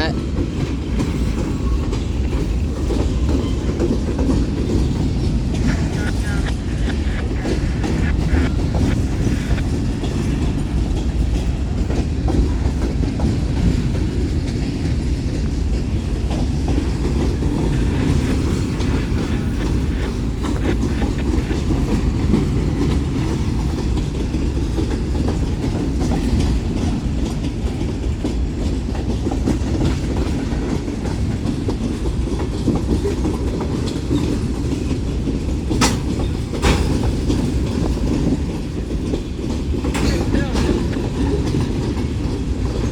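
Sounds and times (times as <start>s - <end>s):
train wheels rumbling on rails: 0.0s - 42.9s.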